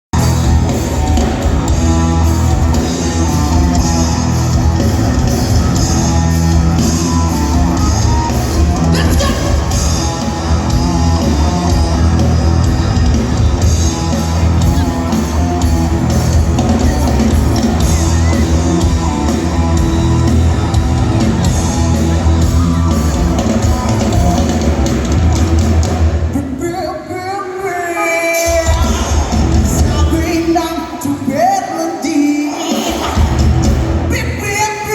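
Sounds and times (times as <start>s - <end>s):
rock band playing live: 0.1s - 34.9s
person singing: 7.5s - 10.2s.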